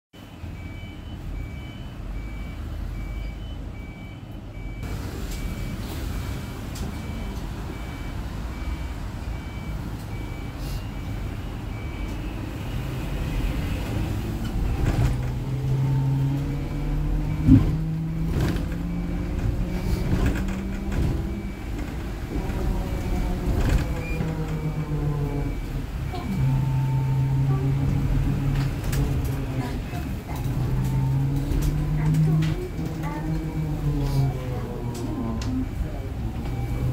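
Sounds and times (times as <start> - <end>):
electric bus running: 0.4 - 36.9.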